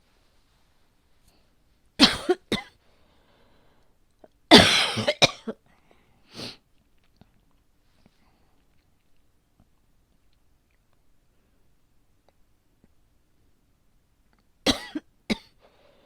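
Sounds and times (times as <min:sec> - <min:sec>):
woman coughing: 0:02.0 - 0:02.8, 0:04.5 - 0:05.6, 0:14.7 - 0:15.6.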